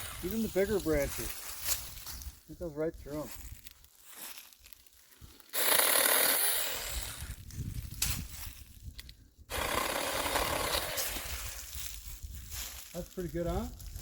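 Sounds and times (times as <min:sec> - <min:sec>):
electric chainsaw cutting branches: 0:05.5 - 0:07.4, 0:09.5 - 0:11.6.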